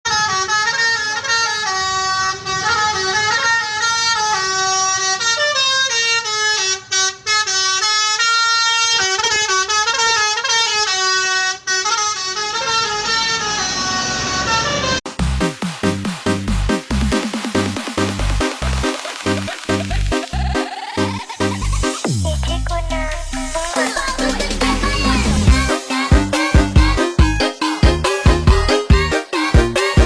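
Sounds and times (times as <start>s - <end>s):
multi-tone musical bus horn: 0.1s - 15.1s, 24.2s - 30.0s.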